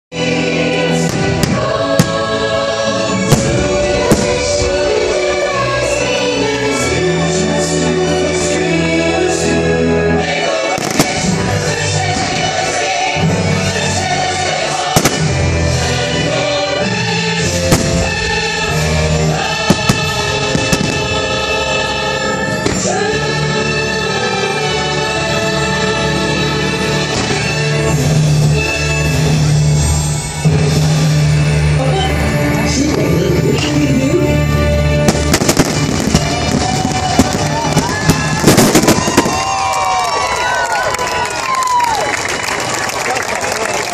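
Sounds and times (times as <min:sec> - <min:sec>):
music with choir singing: 0:00.1 - 0:41.9
fireworks bursting: 0:00.8 - 0:06.9, 0:10.4 - 0:16.7, 0:17.3 - 0:23.1, 0:27.0 - 0:30.1, 0:35.0 - 0:40.1.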